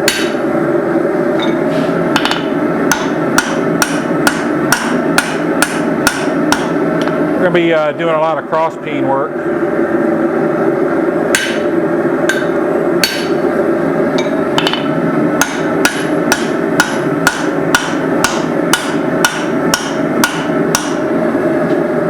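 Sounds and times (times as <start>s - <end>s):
hammer striking steel on anvil: 0.0s - 0.4s, 1.4s - 7.1s, 11.3s - 11.7s, 12.3s - 13.4s, 14.2s - 21.1s.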